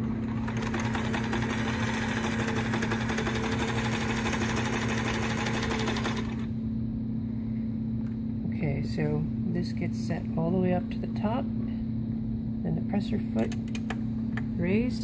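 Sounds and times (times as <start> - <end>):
sewing machine stitching: 0.0 - 6.5.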